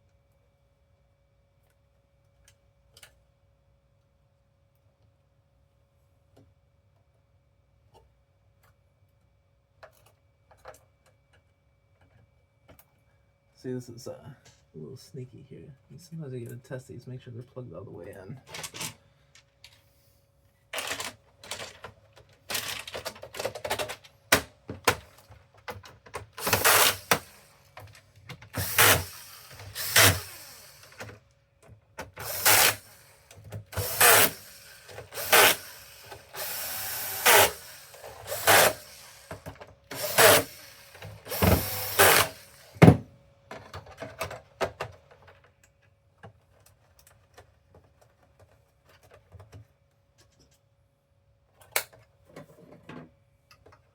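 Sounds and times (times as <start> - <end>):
power drill driving screws: 26.4 - 27.7, 28.5 - 31.2, 32.1 - 43.0.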